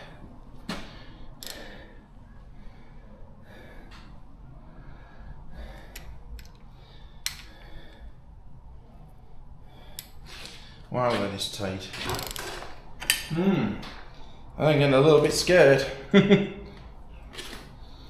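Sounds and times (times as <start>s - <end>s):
person breathing hard: 0.0s - 10.9s.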